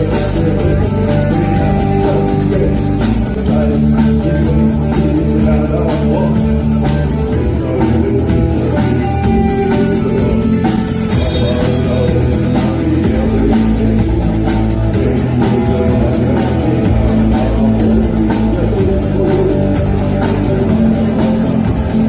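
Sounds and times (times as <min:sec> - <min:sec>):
drum kit beat: 0:00.0 - 0:22.0
rock guitar: 0:00.0 - 0:22.0.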